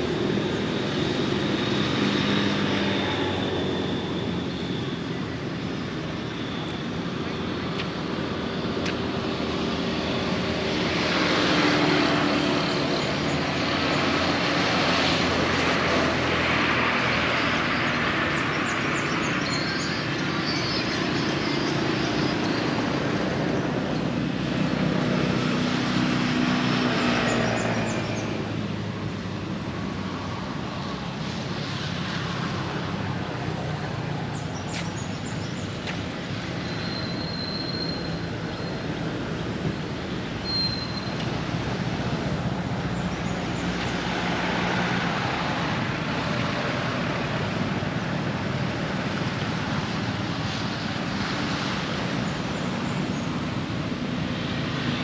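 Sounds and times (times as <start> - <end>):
traffic passing: 0.0 - 55.0
high bird chirps: 36.6 - 38.8, 40.4 - 41.2.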